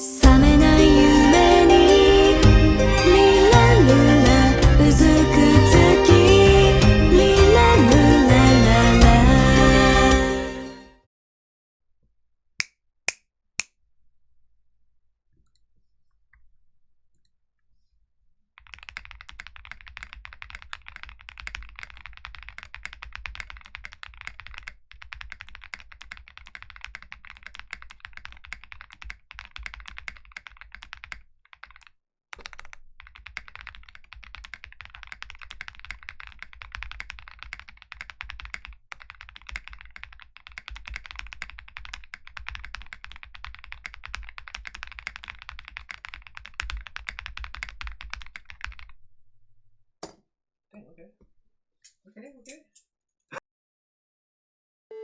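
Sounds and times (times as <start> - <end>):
fast mechanical keyboard typing: 18.6 - 49.0.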